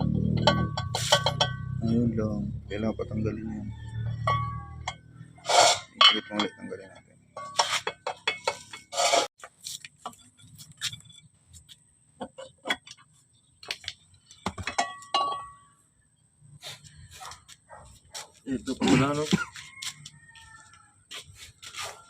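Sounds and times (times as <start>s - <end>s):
metal tools clinking on metal parts: 0.2s - 1.8s, 4.2s - 9.3s, 13.9s - 15.7s.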